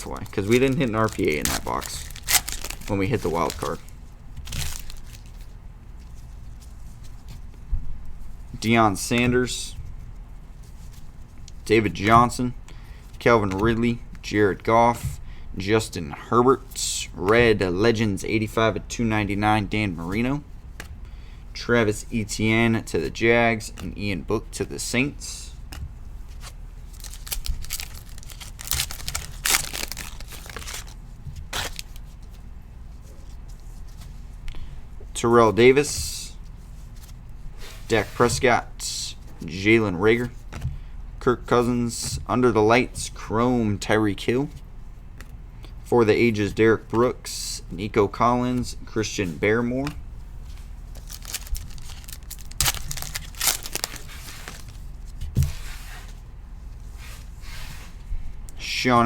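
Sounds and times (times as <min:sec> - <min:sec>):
wrapper crinkling and tearing: 0:00.0 - 0:05.4, 0:26.8 - 0:32.1, 0:50.9 - 0:54.9
cards rustling: 0:00.0 - 0:06.6, 0:26.3 - 0:32.4, 0:49.8 - 0:55.1.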